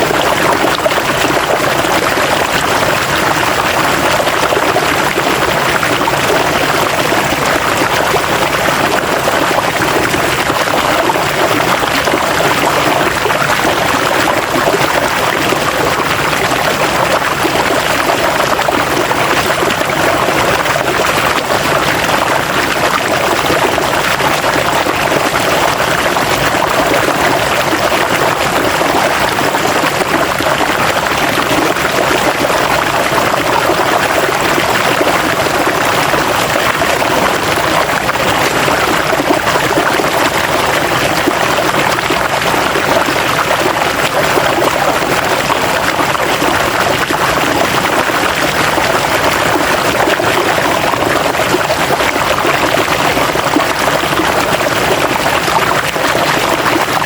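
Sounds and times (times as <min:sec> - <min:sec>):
river water flowing over rocks: 0:00.0 - 0:57.0.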